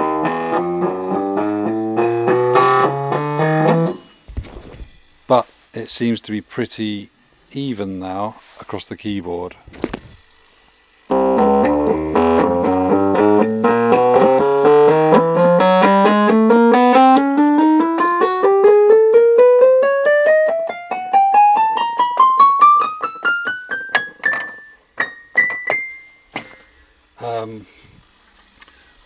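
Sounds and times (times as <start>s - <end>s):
electric keyboard notes: 0.0s - 4.3s, 11.1s - 26.4s.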